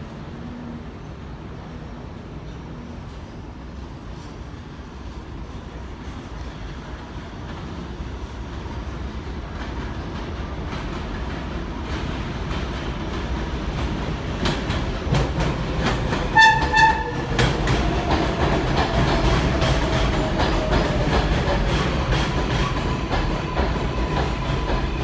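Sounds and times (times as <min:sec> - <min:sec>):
train wheels rumbling on rail: 0:00.0 - 0:25.0
train horn blasts: 0:16.3 - 0:17.4.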